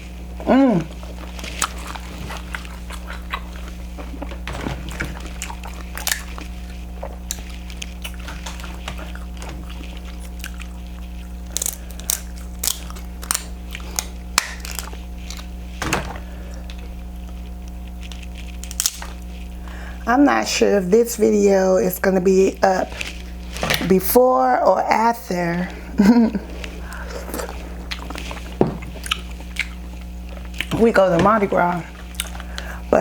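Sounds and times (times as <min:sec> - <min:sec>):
steady low hum: 0:00.0 - 0:33.0
chewing and wet smacks: 0:01.2 - 0:15.5, 0:26.6 - 0:31.0, 0:31.9 - 0:32.7.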